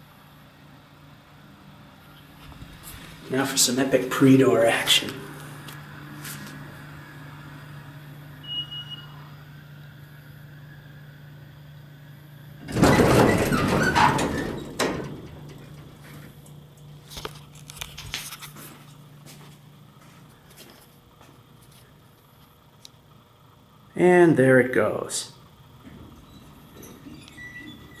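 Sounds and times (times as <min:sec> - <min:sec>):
elevator low hum: 0:00.0 - 0:18.0, 0:25.4 - 0:28.0
elevator chime: 0:08.4 - 0:09.2
elevator doors sliding open: 0:12.6 - 0:16.6, 0:25.8 - 0:28.0.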